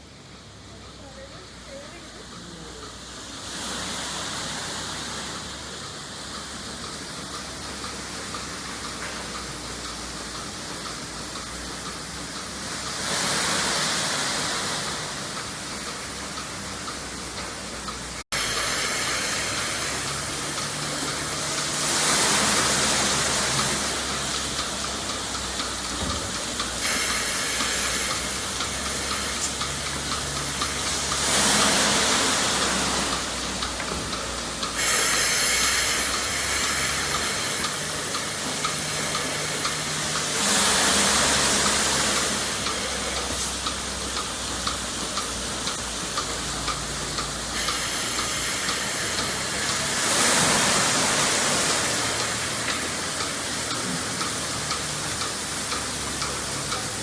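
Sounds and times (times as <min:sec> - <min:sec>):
milking machinery hissing: 0:18.4 - 0:57.0.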